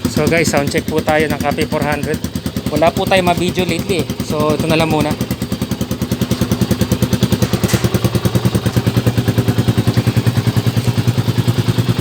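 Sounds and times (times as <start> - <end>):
motorcycle engine idling: 0.0 - 12.0.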